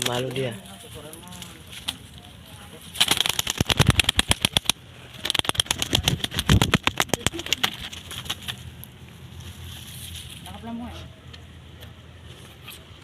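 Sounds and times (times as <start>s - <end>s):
dove wings beating: 1.4s - 8.8s.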